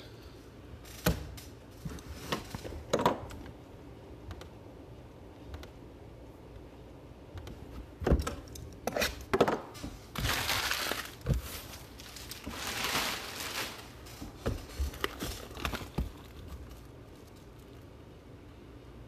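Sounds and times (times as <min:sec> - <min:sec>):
plastic packaging crinkling: 0:10.1 - 0:17.9.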